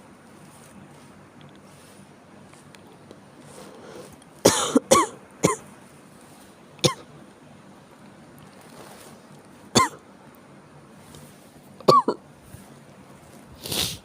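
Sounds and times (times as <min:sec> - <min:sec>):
person coughing: 0:04.5 - 0:05.6, 0:06.8 - 0:07.1, 0:09.8 - 0:10.0, 0:11.8 - 0:12.2.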